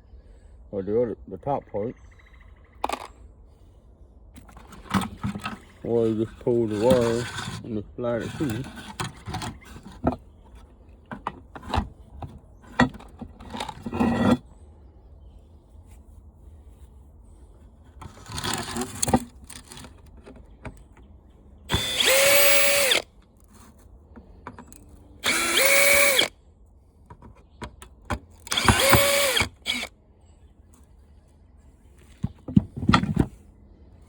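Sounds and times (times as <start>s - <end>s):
power drill driving screws: 4.4s - 7.6s, 8.2s - 10.1s, 12.8s - 14.4s, 21.7s - 23.1s, 25.2s - 26.3s, 28.4s - 29.9s.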